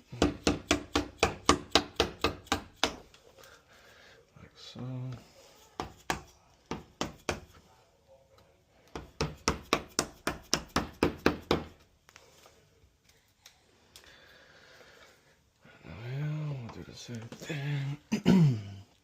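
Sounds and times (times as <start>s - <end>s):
hammer striking chisel: 0.2s - 3.0s, 5.8s - 7.5s, 8.9s - 11.7s.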